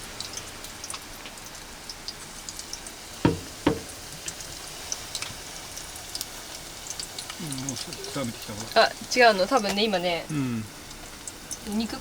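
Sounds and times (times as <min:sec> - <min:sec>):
chicken deep-frying in oil: 0:00.0 - 0:12.0
sharp knocks: 0:03.3 - 0:04.2.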